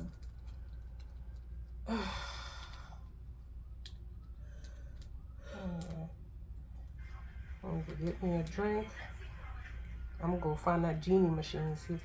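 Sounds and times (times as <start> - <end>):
low steady hum: 0.0 - 12.0
woman sighing: 1.8 - 2.9.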